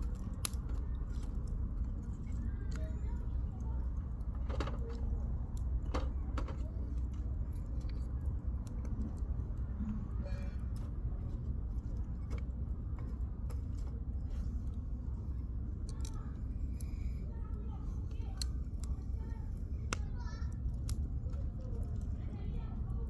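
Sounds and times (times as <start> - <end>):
campfire crackling: 0.0 - 23.0.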